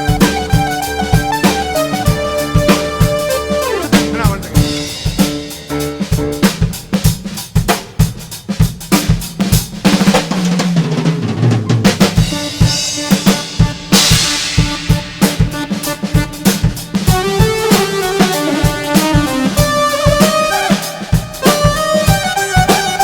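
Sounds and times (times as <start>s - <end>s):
held keyboard notes: 0.0s - 7.4s, 12.0s - 23.0s
drum kit playing fills: 0.0s - 23.0s
low bass line: 2.0s - 5.2s.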